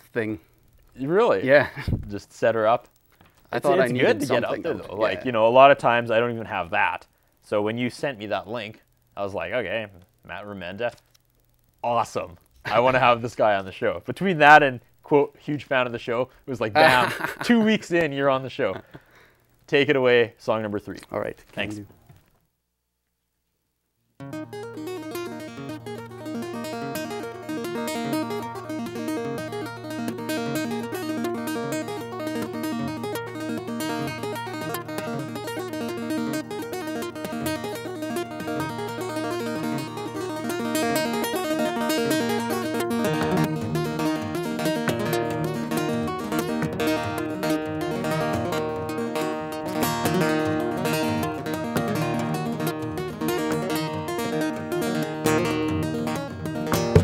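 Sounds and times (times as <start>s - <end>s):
acoustic guitar instrumental: 3.1s - 6.9s, 24.2s - 57.0s.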